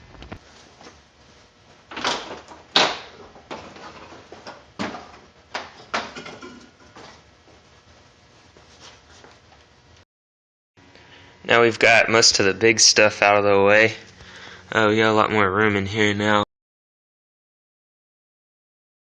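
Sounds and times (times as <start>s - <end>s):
fan shroud knocking and scraping: 1.9s - 7.2s.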